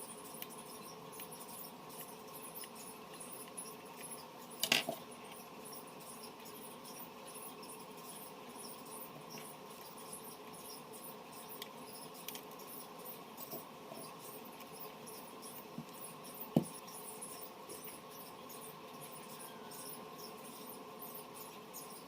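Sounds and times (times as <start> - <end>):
rapid high-pitched chirping: 0.0 - 22.0
steady hum: 0.0 - 22.0
small clicks: 11.6 - 12.6.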